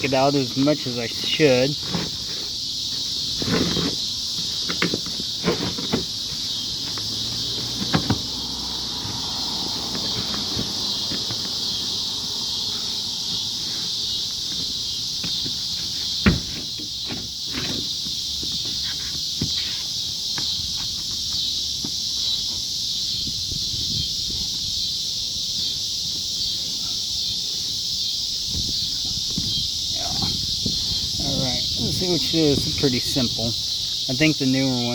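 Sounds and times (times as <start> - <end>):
chorus of insects: 0.0 - 34.9
knocks and rustles: 3.4 - 8.4, 14.5 - 22.6.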